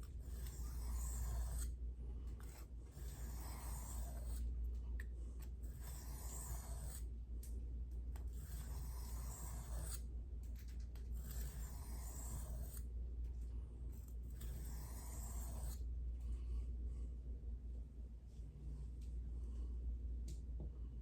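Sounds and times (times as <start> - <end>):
steady low hum: 0.0 - 21.0
knife on sharpening stone: 0.3 - 1.7, 2.4 - 4.4, 5.6 - 7.0, 8.3 - 10.0, 11.2 - 12.8, 14.3 - 15.8.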